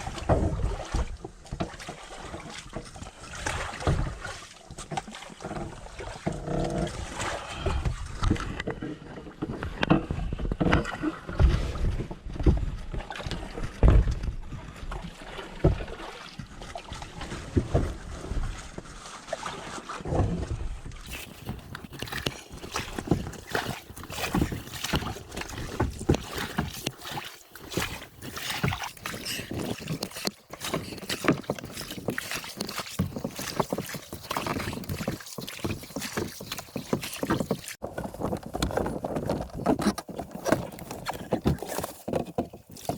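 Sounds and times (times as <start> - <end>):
paddle splashing water: 0.0 - 42.9
knocks against plastic hull: 37.0 - 42.9.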